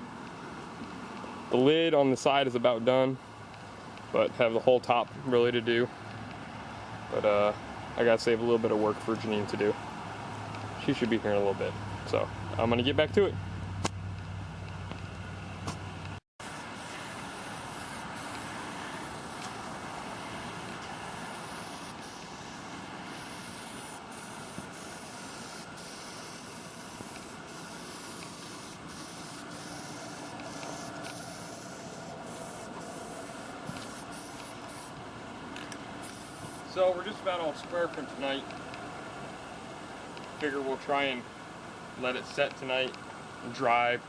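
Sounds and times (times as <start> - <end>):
aerosol can spraying hiss: 16.4 - 35.0, 36.0 - 36.8.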